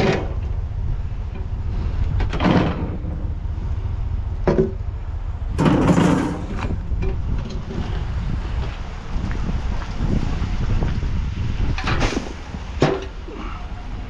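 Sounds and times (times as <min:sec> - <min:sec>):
junk scraping and clattering: 0:00.0 - 0:00.6, 0:01.3 - 0:03.5, 0:04.4 - 0:04.9, 0:05.5 - 0:08.8, 0:11.7 - 0:14.0
steady low rumble: 0:00.0 - 0:14.0.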